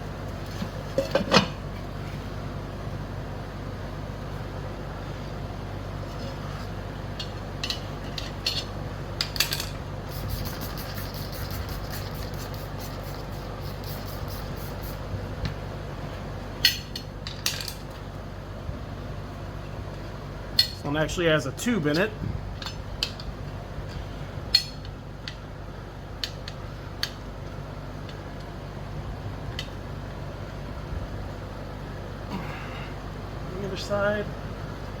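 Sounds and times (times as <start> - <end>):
steady low hum: 0.0 - 35.0
metal tools clinking on wheel rim: 7.2 - 9.8.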